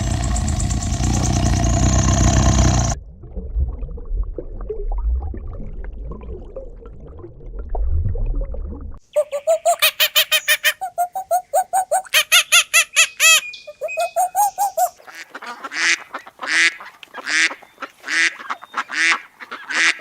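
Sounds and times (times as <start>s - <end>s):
birds calling: 0.0s - 3.0s, 9.1s - 15.7s.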